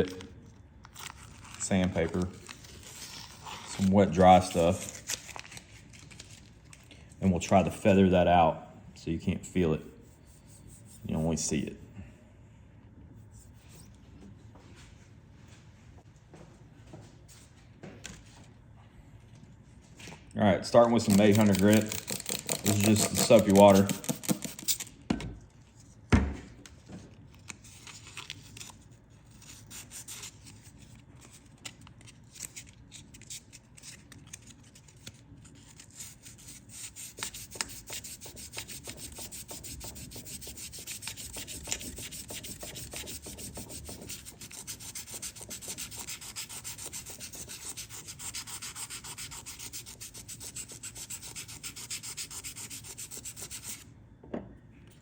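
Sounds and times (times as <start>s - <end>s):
wet sandpaper rubbing: 21.0s - 24.8s, 35.8s - 53.8s.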